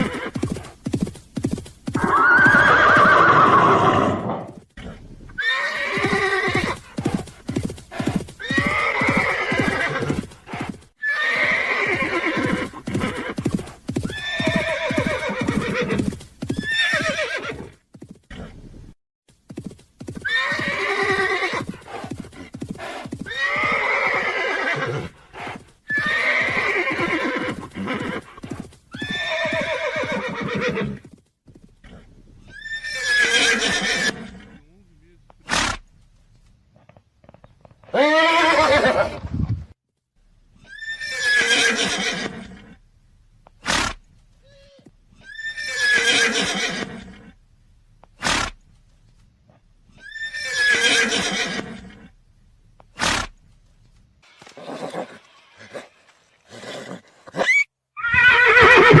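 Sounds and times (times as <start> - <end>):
horse whinnying: 0.0 - 0.7, 2.0 - 18.5, 20.2 - 22.1, 22.8 - 25.2, 25.9 - 31.0, 31.8 - 34.6, 37.9 - 39.3, 40.6 - 42.8, 43.7 - 47.3, 50.0 - 52.0, 54.6 - 59.0.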